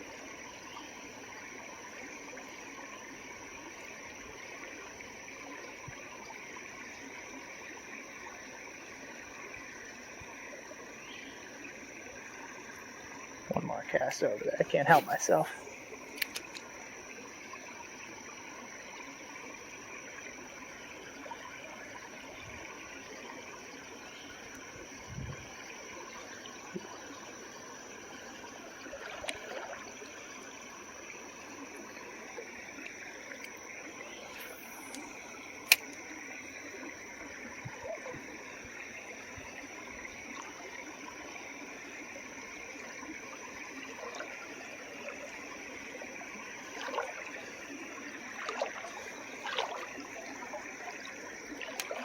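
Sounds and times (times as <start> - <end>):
creek water trickling: 0.0 - 52.0
sharp click: 16.2 - 16.6, 35.6 - 36.0.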